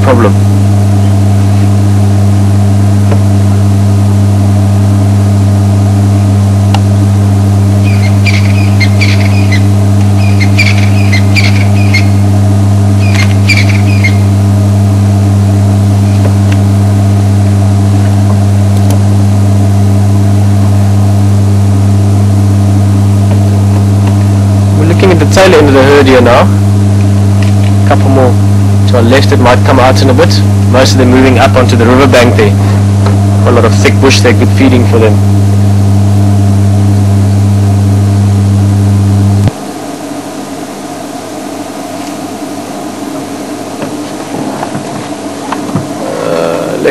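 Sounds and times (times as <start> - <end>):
high bird chirps: 7.8 - 12.2, 13.0 - 14.4.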